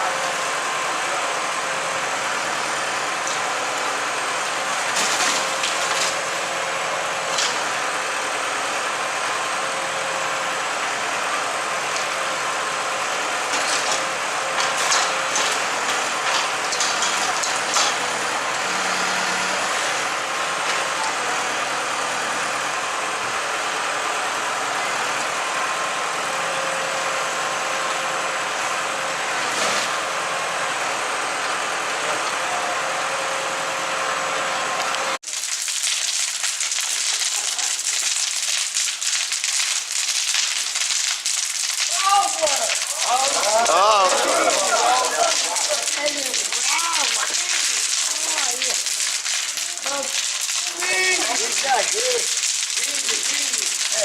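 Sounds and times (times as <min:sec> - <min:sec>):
bonfire rushing: 0:00.0 - 0:54.0
fire crackling: 0:00.1 - 0:21.8, 0:34.6 - 0:54.0.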